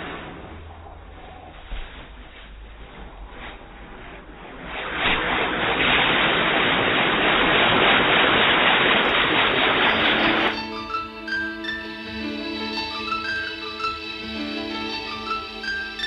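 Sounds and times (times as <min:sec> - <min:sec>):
loud steady rushing noise: 0:03.4 - 0:16.0.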